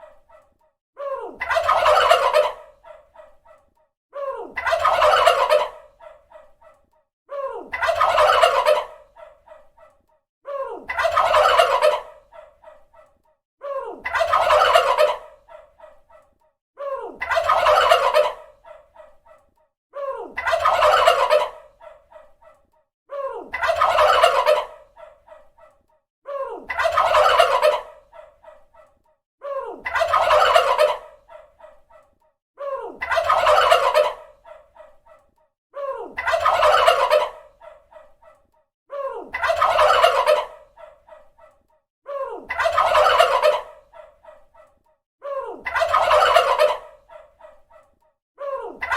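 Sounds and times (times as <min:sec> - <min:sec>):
turkey gobbling: 0:01.4 - 0:03.6, 0:04.6 - 0:06.5, 0:07.7 - 0:09.6, 0:10.9 - 0:12.8, 0:14.1 - 0:16.0, 0:17.2 - 0:19.1, 0:20.4 - 0:22.3, 0:23.5 - 0:25.5, 0:26.7 - 0:28.6, 0:29.8 - 0:31.8, 0:33.0 - 0:34.9, 0:36.2 - 0:38.1, 0:39.3 - 0:41.3, 0:42.5 - 0:44.6, 0:45.6 - 0:47.7.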